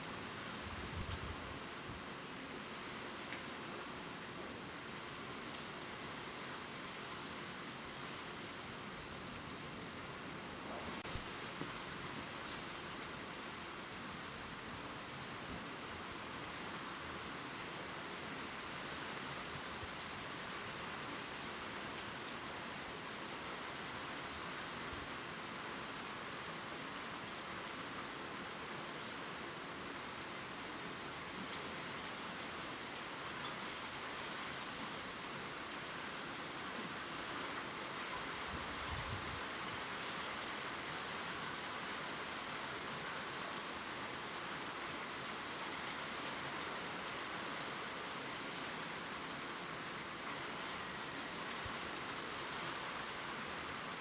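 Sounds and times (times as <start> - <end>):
rain pattering on leaves: 0.0 - 54.0.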